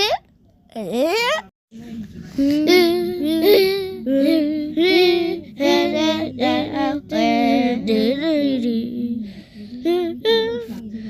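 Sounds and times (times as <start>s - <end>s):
child singing wordless notes: 2.5s - 10.8s.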